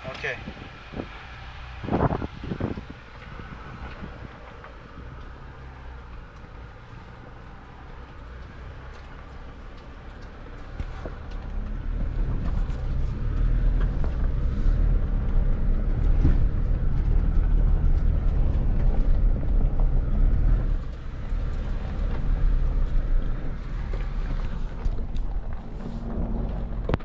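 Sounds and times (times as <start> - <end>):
gravel clicking under tyres: 0.0 - 27.0
off-road vehicle engine rumbling: 0.0 - 27.0.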